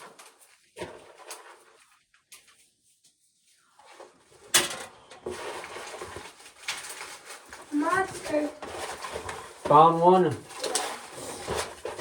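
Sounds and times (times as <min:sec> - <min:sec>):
dry corn husks rustling: 0:05.3 - 0:12.0.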